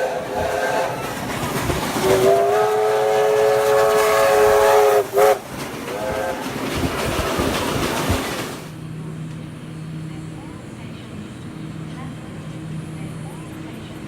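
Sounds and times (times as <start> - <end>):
train horn blasts: 0.0 - 1.2, 2.0 - 6.4
train rumbling and clattering: 0.0 - 14.0.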